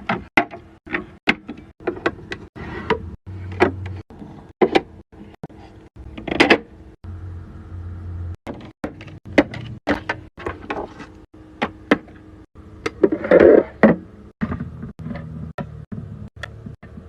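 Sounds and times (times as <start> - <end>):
low hum: 5.1 - 9.8.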